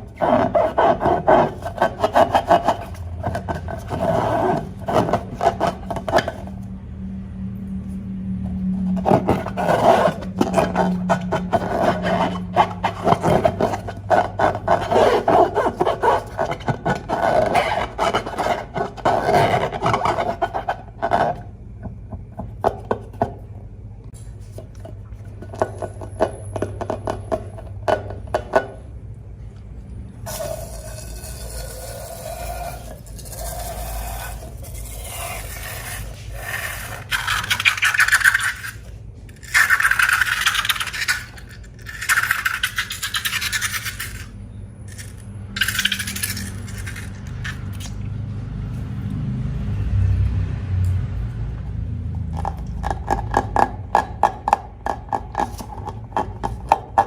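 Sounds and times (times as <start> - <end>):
slime being scraped: 0.0 - 6.6, 8.8 - 21.4, 30.3 - 48.0.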